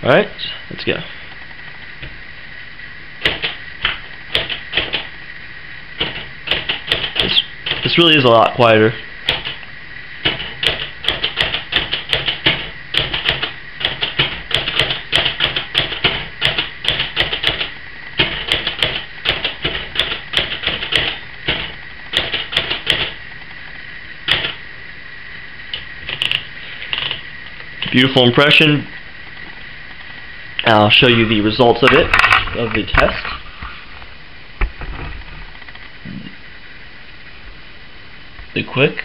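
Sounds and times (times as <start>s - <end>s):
muted typewriter keystrokes: 3.2s - 5.1s, 6.0s - 7.9s, 10.2s - 23.2s, 24.3s - 24.6s, 26.0s - 27.2s.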